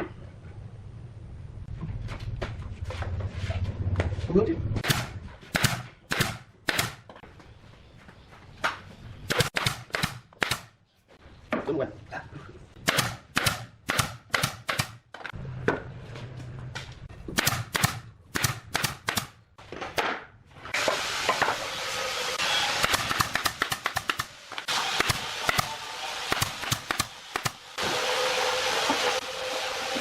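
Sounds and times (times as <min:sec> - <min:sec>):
power tool hiss: 0:20.8 - 0:30.0.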